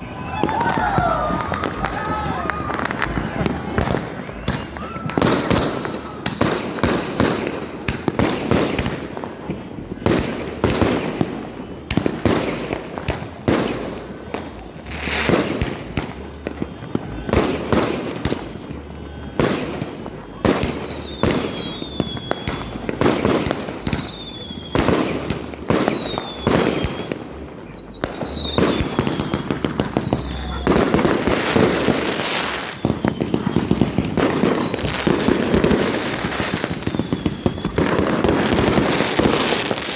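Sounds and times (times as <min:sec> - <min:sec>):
firework whistles falling: 0:00.0 - 0:07.5, 0:20.4 - 0:39.9
fireworks bangs and pops: 0:00.0 - 0:39.9
fireworks crackling barrage: 0:00.0 - 0:39.9.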